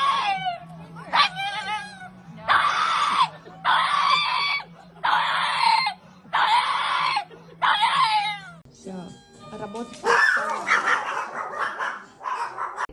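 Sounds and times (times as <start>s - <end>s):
loud screaming cries: 0.0s - 8.6s.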